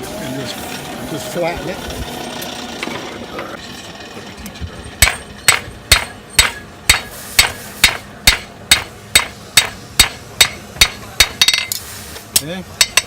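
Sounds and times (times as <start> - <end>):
hammer striking steel on anvil: 5.0 - 11.8, 12.4 - 13.0.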